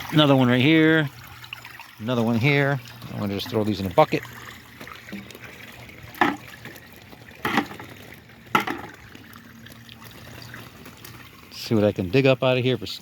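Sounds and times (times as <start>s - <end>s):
water trickling: 0.0s - 13.0s
snails plopping into water: 4.8s - 11.3s.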